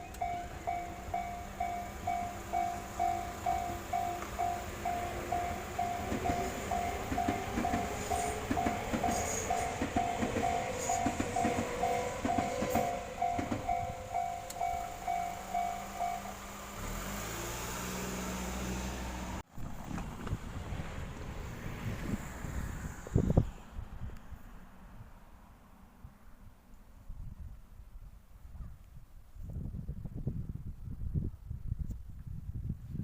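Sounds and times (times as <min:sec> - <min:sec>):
level crossing warning bell: 0:00.0 - 0:16.8
train wheels clattering on rails: 0:01.6 - 0:16.0.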